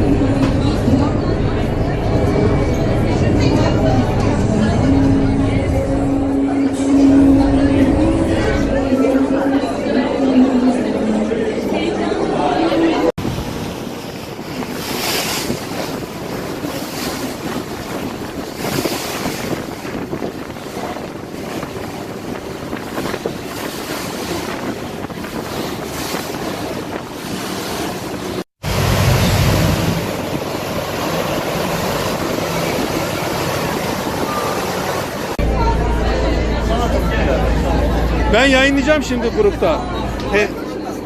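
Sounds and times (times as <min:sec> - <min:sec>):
low rumble: 0:00.0 - 0:11.4, 0:28.3 - 0:38.4
boat engine running: 0:00.0 - 0:41.0
rushing water: 0:00.0 - 0:41.0
wind buffeting microphone: 0:13.2 - 0:36.5.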